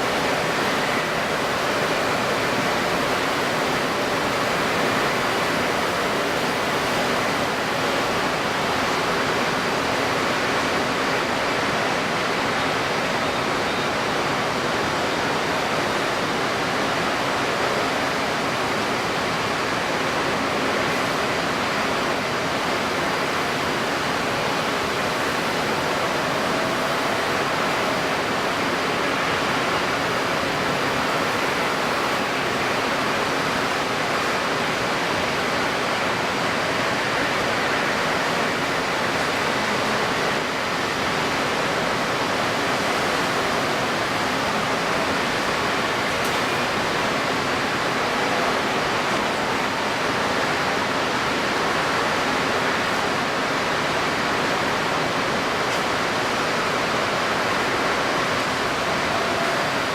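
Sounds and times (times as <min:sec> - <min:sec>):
choppy water: 0:00.0 - 0:59.9.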